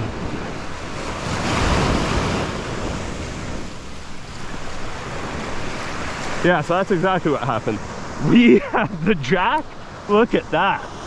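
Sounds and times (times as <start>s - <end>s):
surf washing onto beach: 0.0s - 11.0s
wind buffeting microphone: 0.0s - 11.0s.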